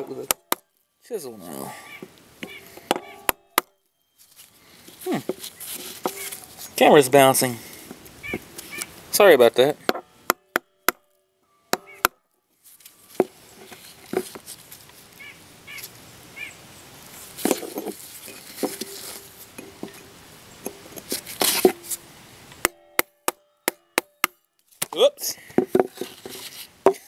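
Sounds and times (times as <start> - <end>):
hammer striking chisel: 2.4 - 3.8, 9.9 - 11.1, 11.7 - 12.2, 22.6 - 24.4.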